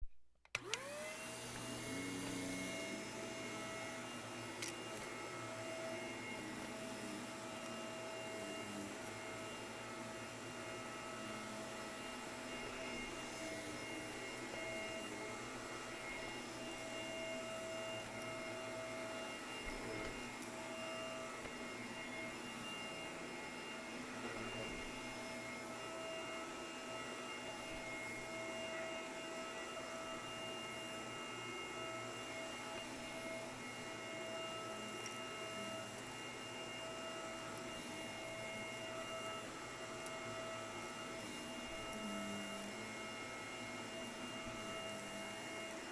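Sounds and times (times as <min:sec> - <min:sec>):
vacuum cleaner running: 0:00.5 - 0:45.9.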